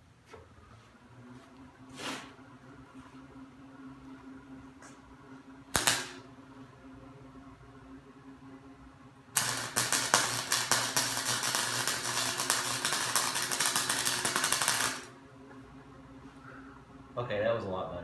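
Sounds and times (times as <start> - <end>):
welder hum: 5.4 - 6.8, 9.2 - 16.5
arc welding crackle: 5.7 - 6.3, 9.3 - 15.2.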